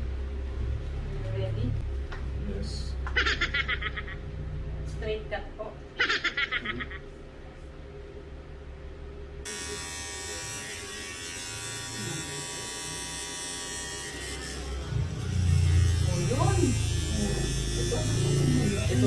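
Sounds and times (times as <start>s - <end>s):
electric hair clipper buzzing: 9.4s - 19.0s.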